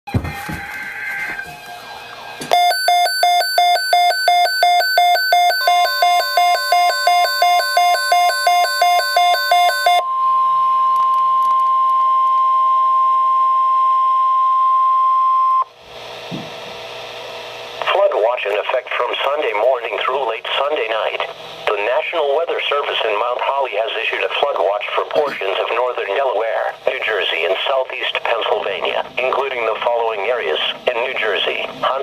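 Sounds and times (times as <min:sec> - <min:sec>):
fast electronic alert beeps: 0:02.5 - 0:10.0
steady warning alarm tone: 0:02.5 - 0:10.7.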